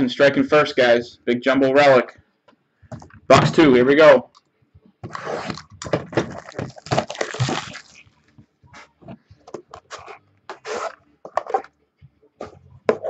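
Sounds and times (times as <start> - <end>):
cardboard ripping and crinkling: 5.0 - 8.0
cardboard box scrapes and clicks: 9.9 - 11.6.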